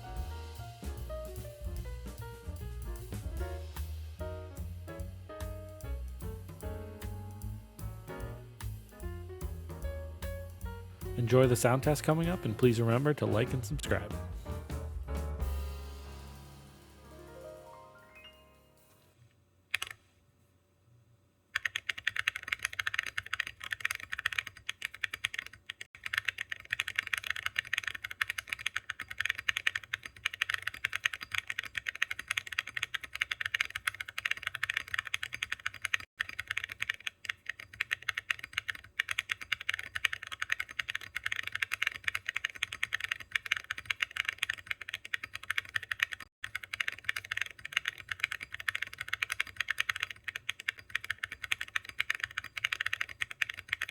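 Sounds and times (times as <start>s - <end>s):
typing on mechanical keyboard: 19.7s - 20.1s, 21.6s - 53.9s.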